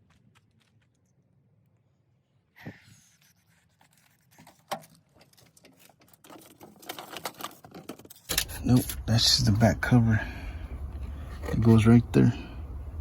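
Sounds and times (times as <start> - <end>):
plastic parts clicking and rattling: 4.2 - 9.0.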